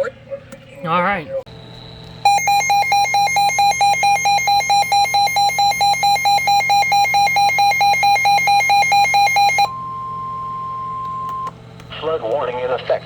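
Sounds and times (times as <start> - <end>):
alarm beeping rapidly: 2.2 - 11.5.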